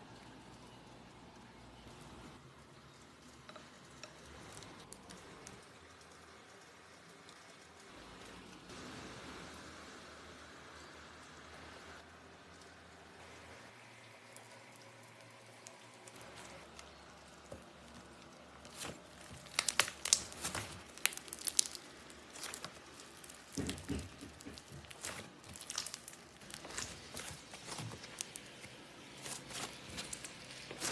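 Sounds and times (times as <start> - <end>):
slime crackling: 15.5 - 30.9.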